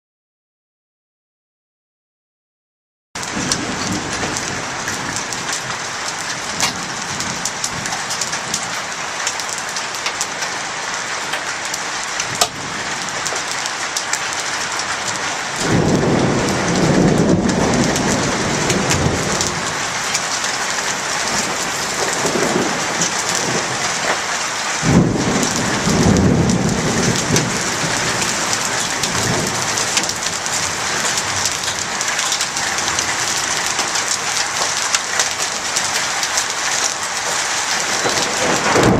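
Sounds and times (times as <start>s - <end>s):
heavy rain pouring: 3.2s - 38.9s
thunder rumbling: 3.2s - 38.9s.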